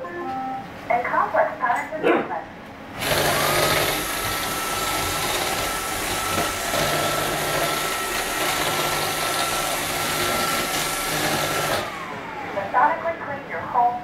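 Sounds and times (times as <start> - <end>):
robot vacuum whirring: 3.0 - 12.6.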